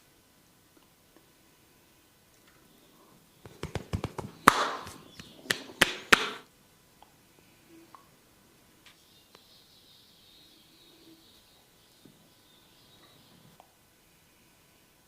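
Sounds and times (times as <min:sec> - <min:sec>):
hands slapping and tapping a head: 0:03.4 - 0:06.4.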